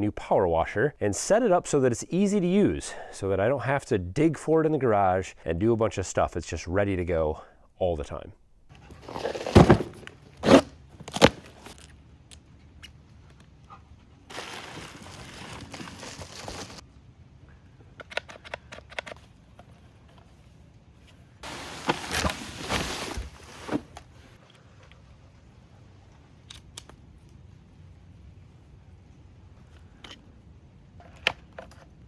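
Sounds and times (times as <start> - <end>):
packaging rustling and crinkling: 8.9 - 11.9, 14.3 - 16.8, 21.4 - 24.0.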